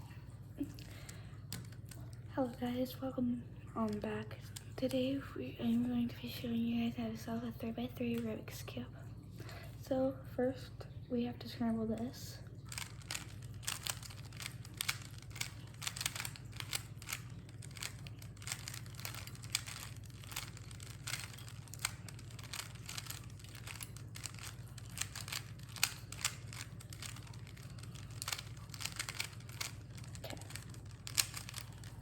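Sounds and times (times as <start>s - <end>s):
puzzle cube twisting clicks: 12.7s - 32.0s.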